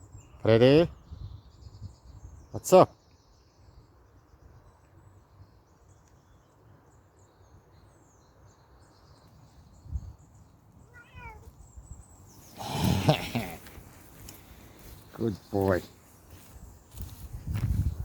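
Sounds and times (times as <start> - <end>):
kitten meowing: 10.9 - 11.5.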